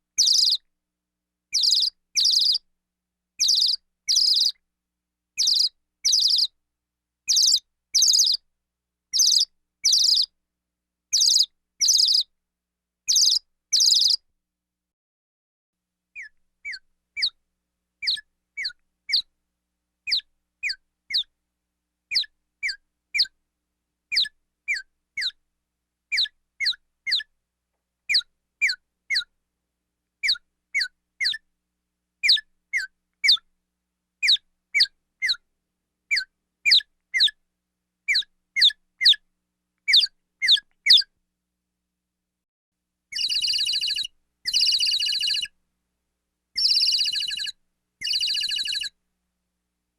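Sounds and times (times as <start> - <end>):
short high chirps falling in pitch: 46.6 - 47.4.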